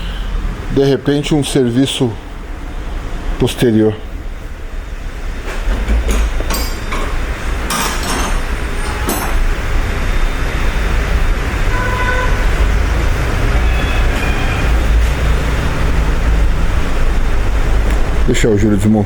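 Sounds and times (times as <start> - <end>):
steady low hum: 0.0 - 13.8, 14.5 - 19.0
metal tools clinking: 6.2 - 9.6
brief high tones: 13.6 - 15.0.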